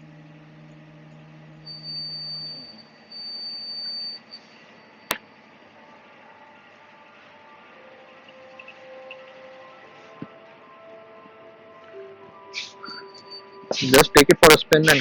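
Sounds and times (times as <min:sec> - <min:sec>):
high-pitched electronic beeps: 0:01.6 - 0:05.2, 0:12.6 - 0:15.0.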